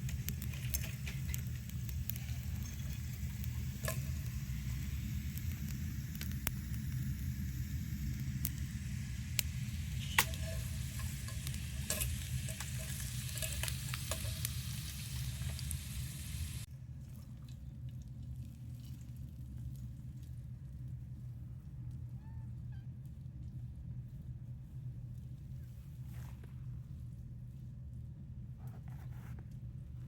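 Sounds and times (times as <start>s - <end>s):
food sizzling with pops: 0.0s - 16.7s.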